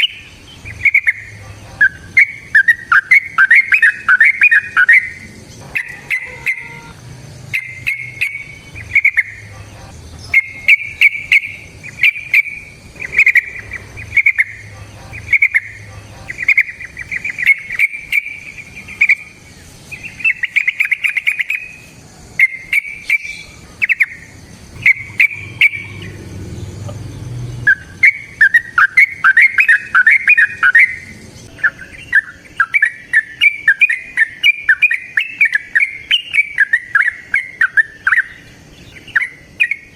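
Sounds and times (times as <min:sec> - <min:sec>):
low hum: 0:00.0 - 0:20.6, 0:23.0 - 0:29.3
bulbul singing bubbly phrases: 0:00.0 - 0:39.9.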